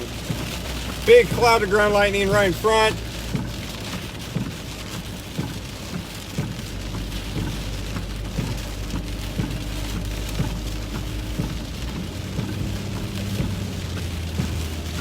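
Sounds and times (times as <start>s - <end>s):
heavy rain on truck: 0.0s - 15.0s
tire and road noise: 0.0s - 15.0s.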